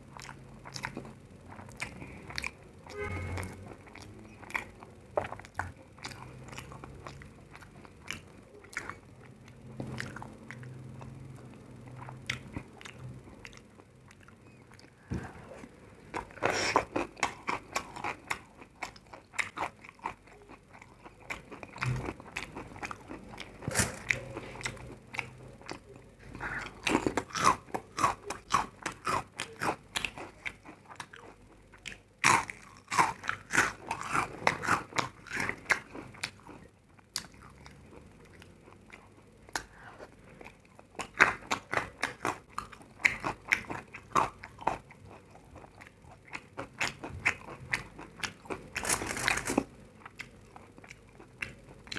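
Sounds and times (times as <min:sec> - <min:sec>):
chewing crisp food: 0:00.0 - 0:51.9.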